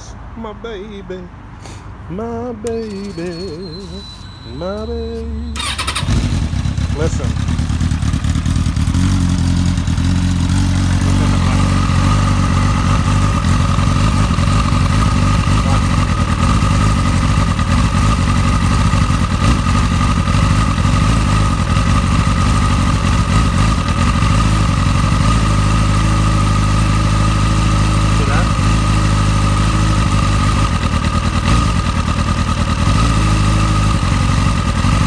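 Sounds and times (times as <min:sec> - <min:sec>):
steady high whine: 0:02.8 - 0:05.6
motorcycle engine idling roughly: 0:02.8 - 0:35.0.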